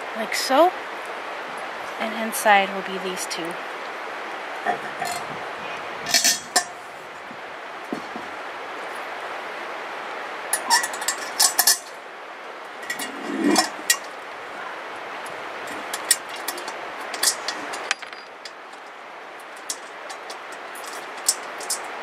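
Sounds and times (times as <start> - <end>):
metal grill parts clinking: 6.1 - 6.8, 10.6 - 12.0, 12.8 - 14.2, 15.6 - 22.0.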